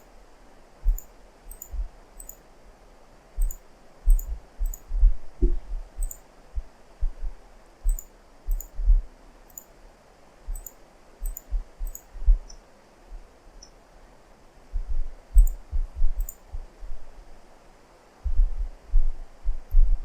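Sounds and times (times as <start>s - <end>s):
faint hiss: 0.0s - 20.0s
computer mouse clicking: 0.9s - 2.4s, 3.4s - 4.9s, 6.0s - 6.2s, 7.9s - 8.8s, 9.5s - 9.7s, 10.5s - 12.6s, 15.4s - 15.6s, 16.2s - 16.4s.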